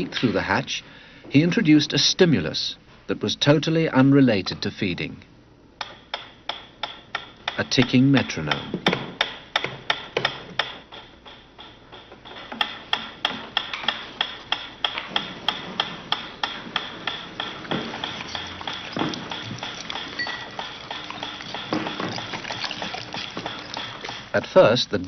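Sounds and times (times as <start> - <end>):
metronome ticking: 12.6 - 24.6.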